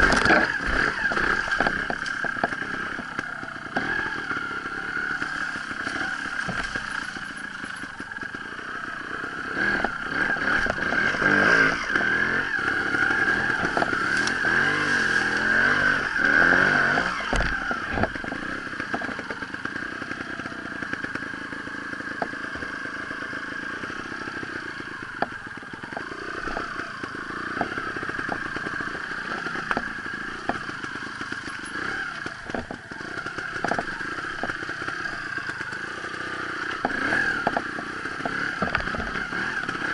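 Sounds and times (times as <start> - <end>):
motorcycle engine revving: 0.0 - 39.9
knocks and clatter: 32.4 - 32.8, 36.7 - 39.7.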